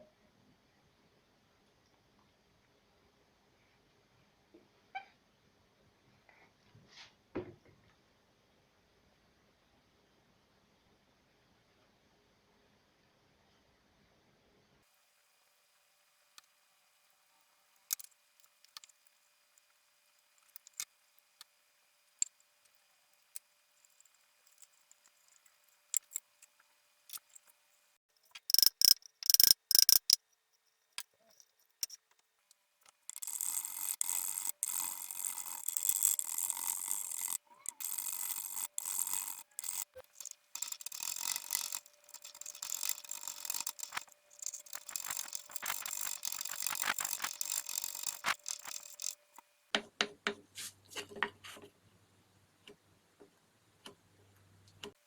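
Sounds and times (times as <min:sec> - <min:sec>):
clicks and taps of tools: 0:28.3 - 0:30.2.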